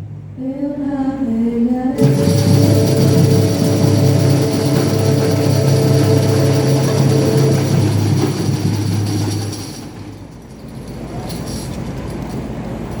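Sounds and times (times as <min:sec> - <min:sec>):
room noise: 0:01.8 - 0:13.0
band holding low chord: 0:02.0 - 0:10.4.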